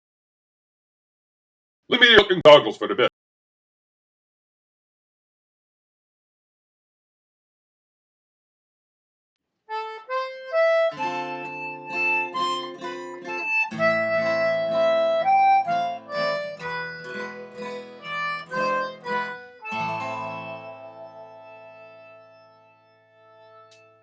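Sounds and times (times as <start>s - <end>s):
harmonica melody: 9.7s - 24.0s
plucked guitar chords: 9.7s - 24.0s.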